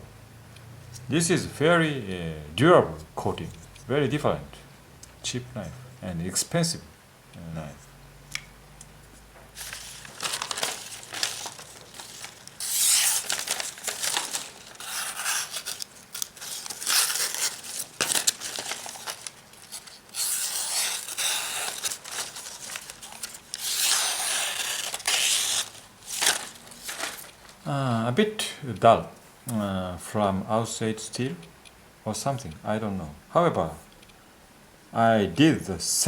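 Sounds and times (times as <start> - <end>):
knife slicing through paper: 9.6 - 27.3.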